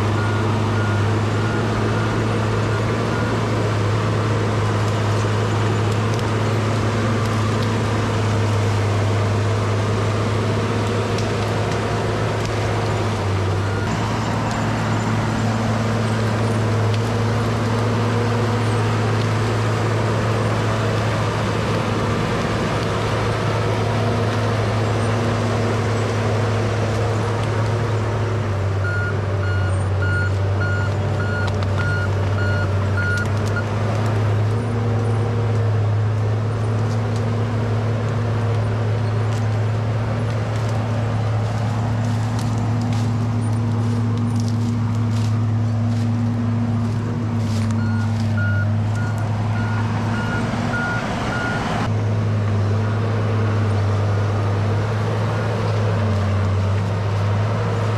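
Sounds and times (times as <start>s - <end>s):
bulldozer diesel engine: 0.0s - 57.9s
reversing alarm beeps: 28.8s - 33.2s, 47.8s - 51.6s.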